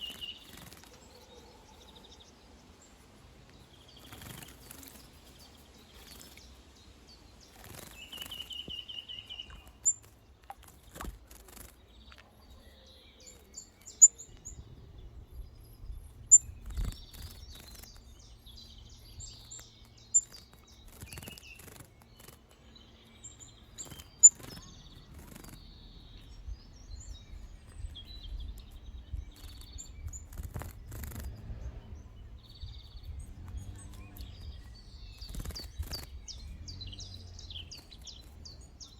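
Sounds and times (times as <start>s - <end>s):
splashing and wing-fluttering: 0.0s - 1.1s, 3.2s - 12.4s, 16.6s - 18.2s, 19.4s - 22.7s, 23.6s - 25.6s, 29.4s - 31.7s
small birds chirping: 0.0s - 38.9s.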